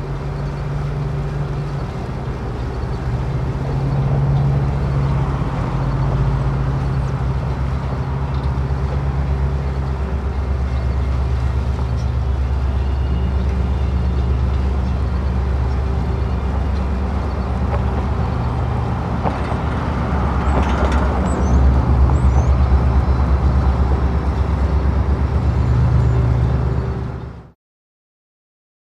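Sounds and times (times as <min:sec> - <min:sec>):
diesel locomotive engine droning: 0:00.0 - 0:27.6.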